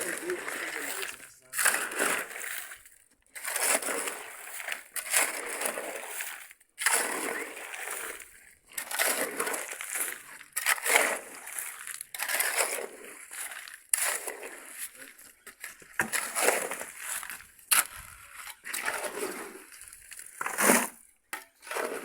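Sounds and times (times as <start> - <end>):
shovels scraping wet concrete: 0.0 - 22.0.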